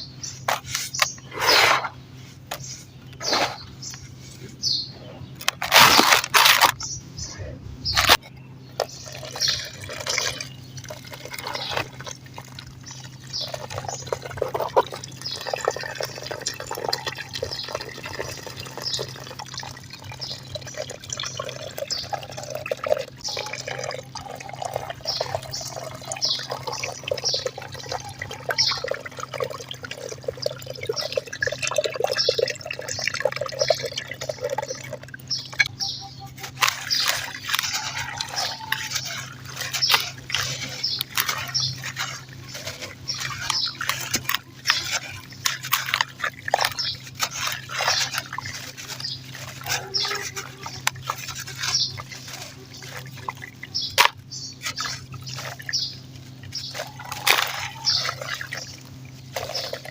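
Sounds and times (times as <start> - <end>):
wet dirt crumbling: 36.4 - 59.9.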